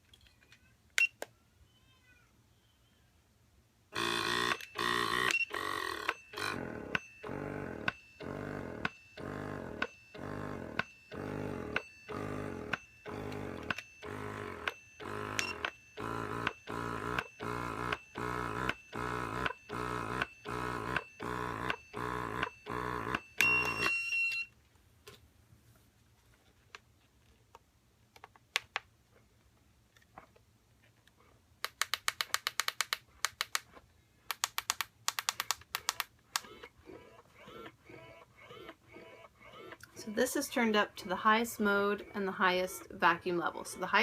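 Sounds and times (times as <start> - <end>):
breast pump motor pulsing: 4.0 - 23.9, 35.8 - 44.0.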